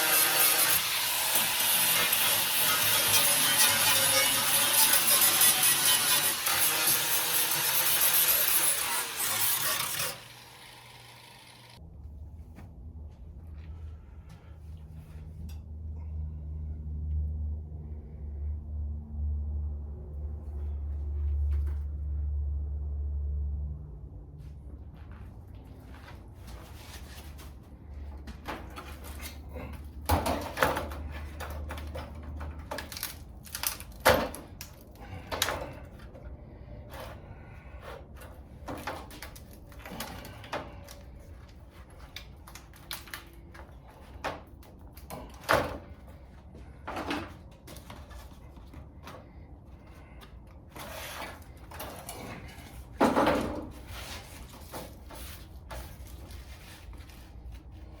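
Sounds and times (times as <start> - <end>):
low hum: 10.1 - 25.6.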